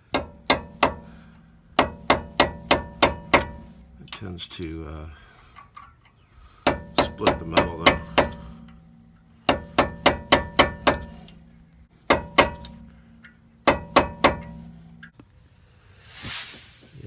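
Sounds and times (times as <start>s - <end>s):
hammer tapping metal punch: 0.0s - 4.2s, 6.6s - 15.2s.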